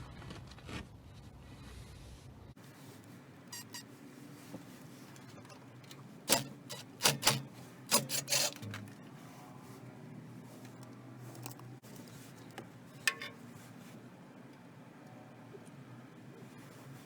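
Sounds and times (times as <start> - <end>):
short scrapes: 1.6 - 9.8.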